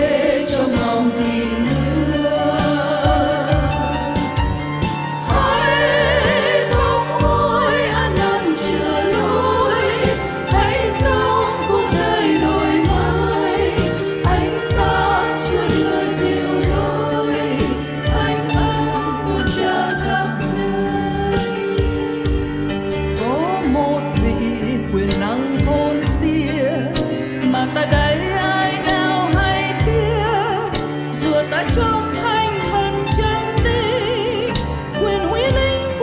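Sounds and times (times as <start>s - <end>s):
choir singing a hymn: 0.0s - 22.3s
sustained instrumental accompaniment: 0.0s - 36.0s.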